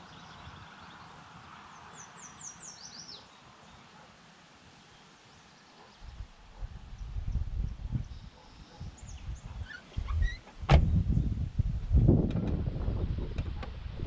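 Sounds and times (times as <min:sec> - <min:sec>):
small bird singing: 0:00.0 - 0:04.0, 0:04.8 - 0:11.4
faint outdoor hiss: 0:00.0 - 0:14.0.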